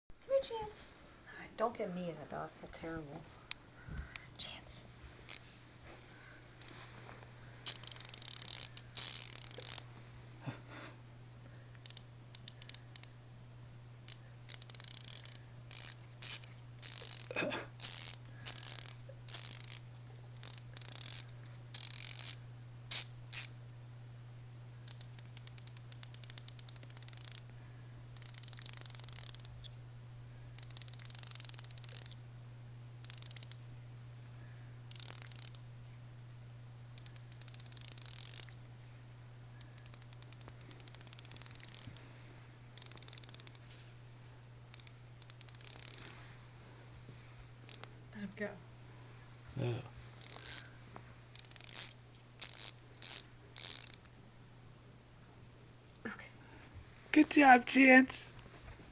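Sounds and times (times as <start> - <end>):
steady low hum: 0.1 - 58.9
ratchet wrench clicking: 7.6 - 9.9, 11.8 - 13.1, 14.1 - 23.6, 24.8 - 27.4, 28.2 - 29.6, 30.6 - 32.2, 33.0 - 33.6, 34.9 - 35.7, 37.0 - 38.5, 39.6 - 42.0, 42.8 - 43.7, 44.7 - 46.2, 50.2 - 50.7, 51.3 - 54.1.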